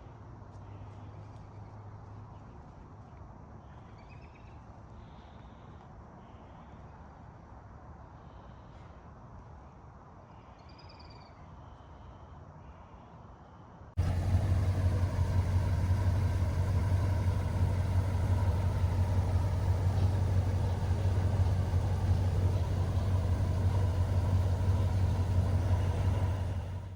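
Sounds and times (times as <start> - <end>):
car engine rumbling: 14.0 - 26.9.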